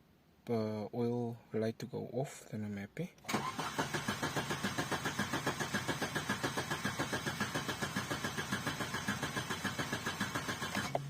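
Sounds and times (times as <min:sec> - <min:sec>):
engine cranking without starting: 0:03.3 - 0:11.0.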